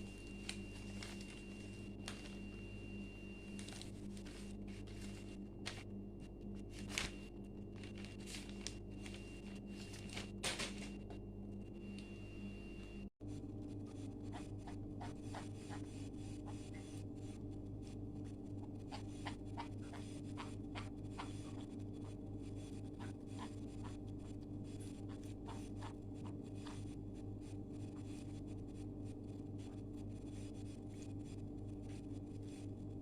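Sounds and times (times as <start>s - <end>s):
faint scratching and clicking: 0.0s - 12.2s, 12.8s - 33.0s
steady low hum: 0.0s - 33.0s.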